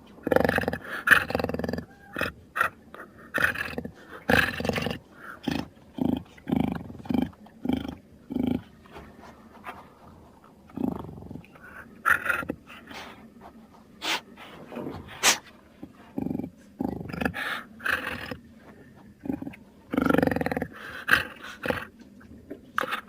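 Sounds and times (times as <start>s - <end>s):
animal-like growls and calls: 0.2s - 8.8s, 10.6s - 13.2s, 14.0s - 23.0s.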